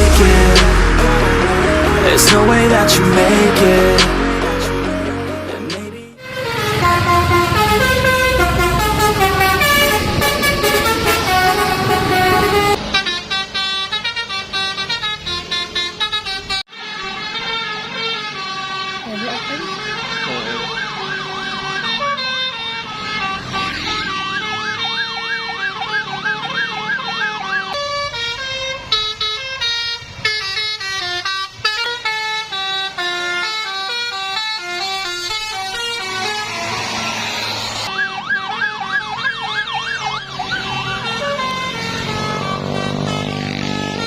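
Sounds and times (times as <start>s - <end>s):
multi-tone bus horn melodies: 0.0s - 44.0s
fast warbling siren-like tone: 20.0s - 22.3s, 23.4s - 27.8s, 35.2s - 44.0s.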